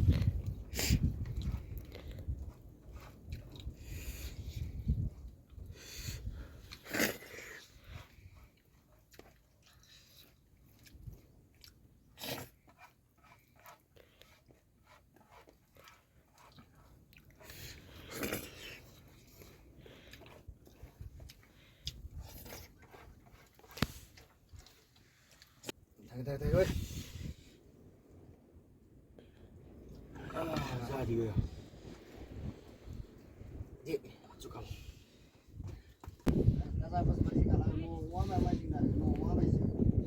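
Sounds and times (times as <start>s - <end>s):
person chewing crunchy food: 0.0s - 25.8s.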